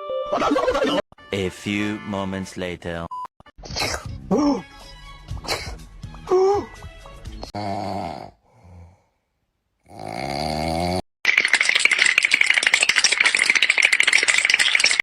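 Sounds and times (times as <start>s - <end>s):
cartoon snoring: 7.6s - 9.2s, 9.8s - 11.0s
fast rattling noise: 11.3s - 15.0s.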